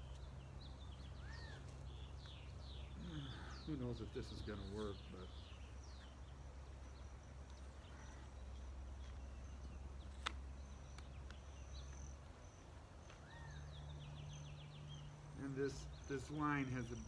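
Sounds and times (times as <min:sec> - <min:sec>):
bird chirps: 0:00.0 - 0:17.0
steady low hum: 0:00.0 - 0:17.0
rising-and-falling bird call: 0:01.1 - 0:01.7, 0:13.2 - 0:13.9.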